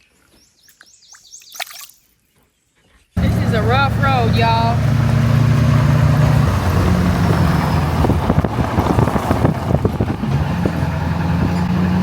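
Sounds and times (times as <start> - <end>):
knocks and rattles over bumps: 3.2 - 12.0
low engine hum: 3.2 - 12.0.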